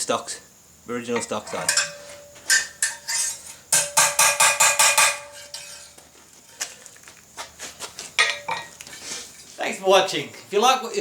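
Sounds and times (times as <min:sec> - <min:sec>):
hammer striking steel on anvil: 0:01.2 - 0:05.8.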